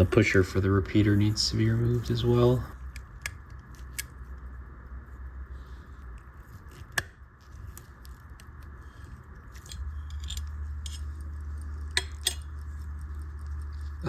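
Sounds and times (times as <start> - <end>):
low steady hum: 0.0 - 14.0
small metal tool clicks: 12.0 - 12.6.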